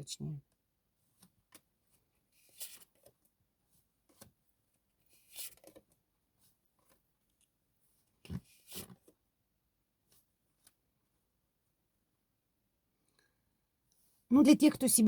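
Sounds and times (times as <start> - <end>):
tarot cards rustling and scraping: 2.3 - 3.2, 5.1 - 7.0, 8.3 - 9.2.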